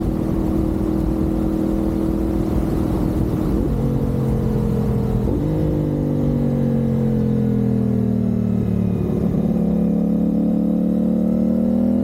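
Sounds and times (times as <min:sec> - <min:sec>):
wind noise on microphone: 0:00.0 - 0:06.5
motorcycle engine running: 0:00.0 - 0:12.0.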